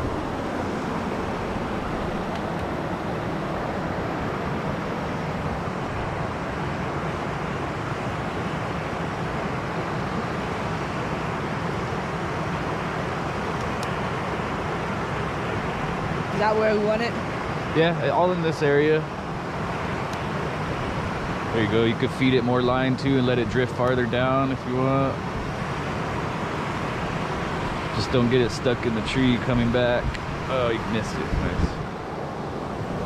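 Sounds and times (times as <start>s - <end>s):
river water rushing: 0.0s - 17.7s.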